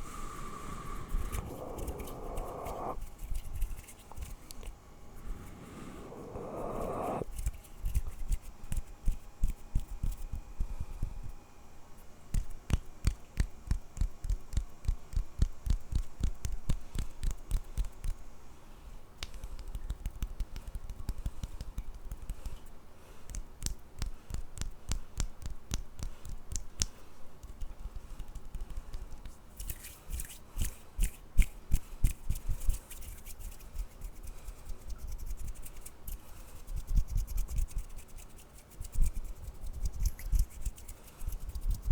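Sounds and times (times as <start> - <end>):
brushing and rubbing noise: 0.0 - 8.4, 32.6 - 41.9
hands tapping and clicking: 23.2 - 29.8.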